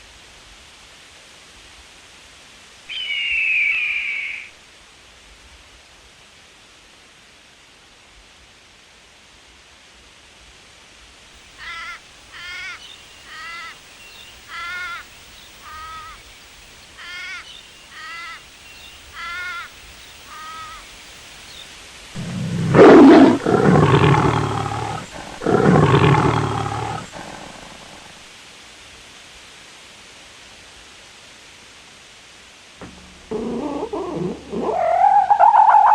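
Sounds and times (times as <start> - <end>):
bird harsh caw calls: 11.6 - 16.3, 17.0 - 21.0
large animal roaring: 22.2 - 28.2, 33.3 - 35.9.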